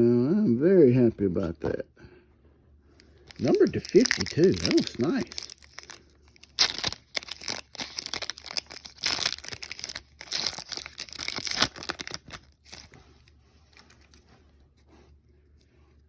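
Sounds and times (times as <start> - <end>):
card pack wrapper tearing and crinkling: 3.2 - 13.0, 13.7 - 14.2.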